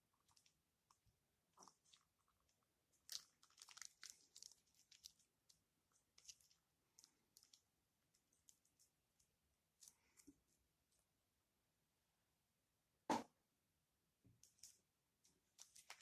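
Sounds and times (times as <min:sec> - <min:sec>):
crackling and crinkling by hands: 0:00.0 - 0:11.4, 0:14.3 - 0:16.0.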